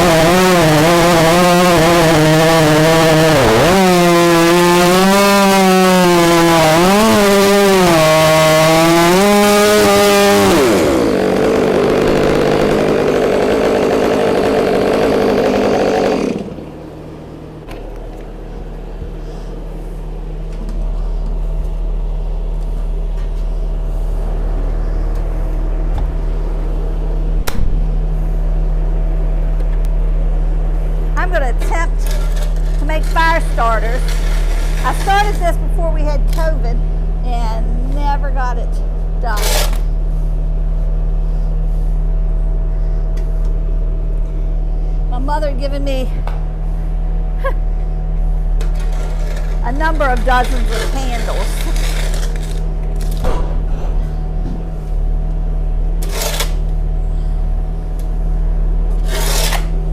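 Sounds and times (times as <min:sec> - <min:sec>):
chainsaw cutting a log: 0:00.0 - 0:16.9, 0:31.2 - 0:38.4, 0:39.1 - 0:40.1, 0:48.6 - 0:54.5, 0:55.9 - 0:57.6, 0:58.8 - 0:59.9
low steady hum: 0:06.0 - 0:59.9.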